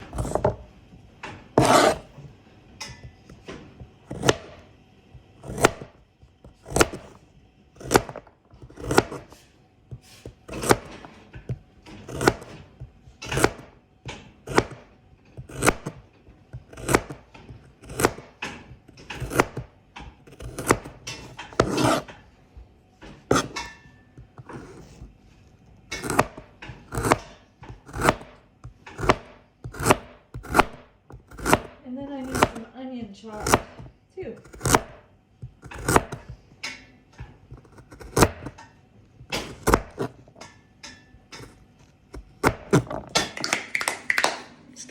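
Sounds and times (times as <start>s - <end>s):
knife chopping carrots on board: 0.0s - 0.6s, 1.6s - 2.1s, 3.8s - 4.6s, 5.2s - 7.2s, 7.8s - 22.2s, 23.3s - 25.1s, 25.9s - 32.7s, 33.3s - 38.6s, 39.2s - 40.2s, 41.3s - 44.2s.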